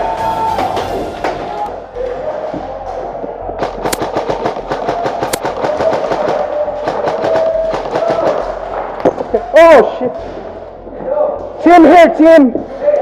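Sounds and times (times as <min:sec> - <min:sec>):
airsoft guns firing in bursts: 0:03.6 - 0:09.0.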